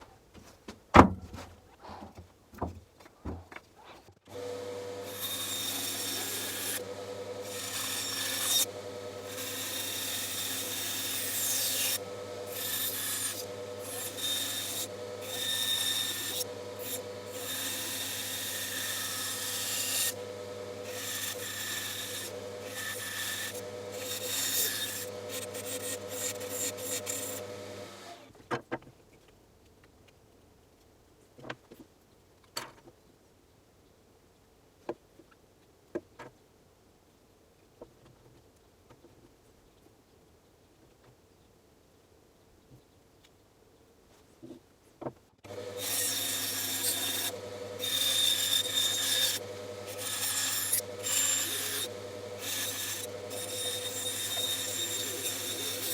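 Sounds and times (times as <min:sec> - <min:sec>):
bandsaw cutting wood: 0:04.3 - 0:28.3, 0:45.4 - 0:55.9.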